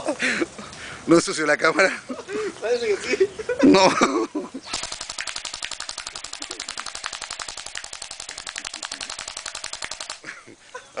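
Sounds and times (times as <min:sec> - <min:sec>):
airsoft rifle firing full auto: 0:04.7 - 0:10.3.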